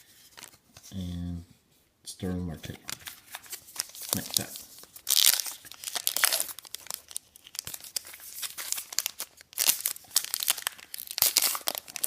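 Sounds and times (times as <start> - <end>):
wrapper tearing and crinkling: 2.9 - 12.0.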